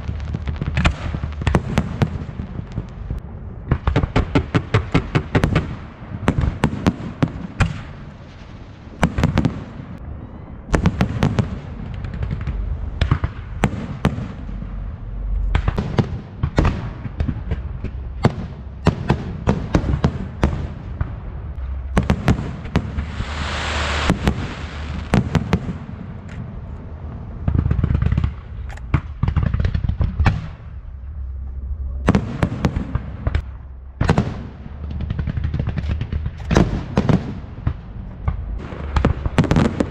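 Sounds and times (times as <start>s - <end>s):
fireworks bangs and crackles: 0.0s - 31.0s, 32.0s - 39.9s
firework hissing spray: 22.8s - 25.6s.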